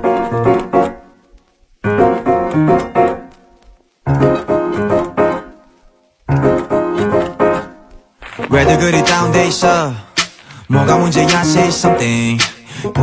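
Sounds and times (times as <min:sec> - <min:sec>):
keyboard riff bright chords: 0:06.3 - 0:13.0.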